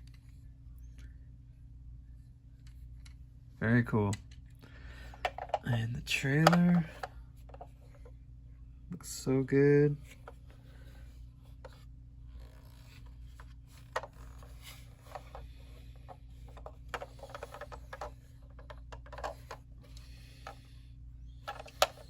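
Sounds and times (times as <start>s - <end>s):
faint steady hum: 0.0s - 22.0s
toy parts clicking and tapping: 16.4s - 19.6s.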